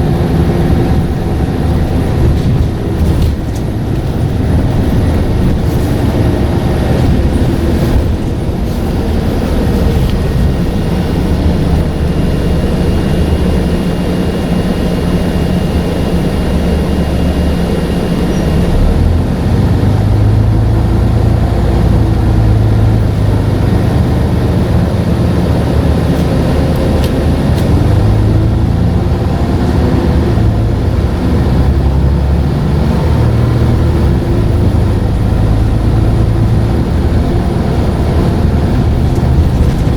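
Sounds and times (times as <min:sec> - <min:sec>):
bus engine changing gear: 0:00.0 - 0:39.9.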